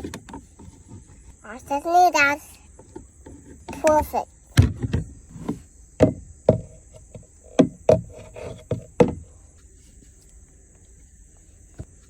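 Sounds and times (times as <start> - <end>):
faint background hiss: 0.0 - 12.0
hard objects knocking: 2.7 - 9.3.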